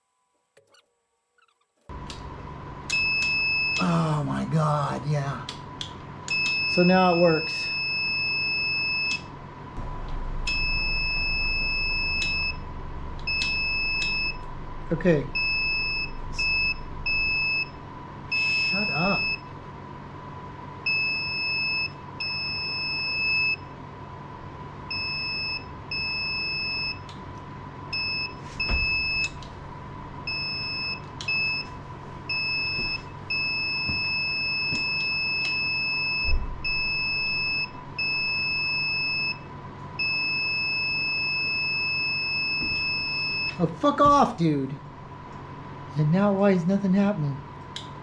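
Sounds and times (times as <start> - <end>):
faint electrical hum: 0.0 - 48.0
electronic buzzer beeping: 15.4 - 19.5.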